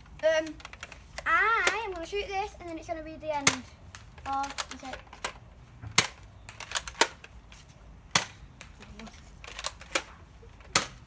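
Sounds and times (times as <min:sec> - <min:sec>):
toy blaster shots hitting plastic: 0:01.6 - 0:02.0, 0:03.4 - 0:07.3, 0:08.1 - 0:08.8, 0:09.5 - 0:11.0.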